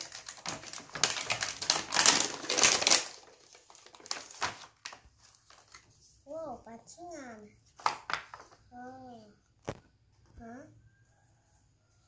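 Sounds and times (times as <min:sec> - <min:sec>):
plastic toy pieces clattering: 0:00.0 - 0:04.6
packaging crinkling: 0:00.0 - 0:05.9.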